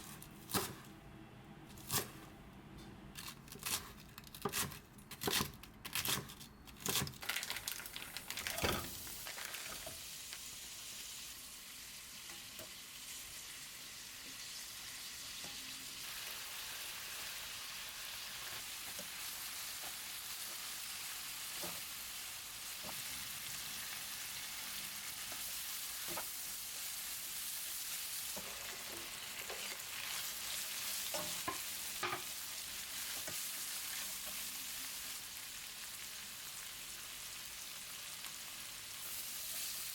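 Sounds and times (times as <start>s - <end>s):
food sizzling in a pan: 8.5s - 39.9s.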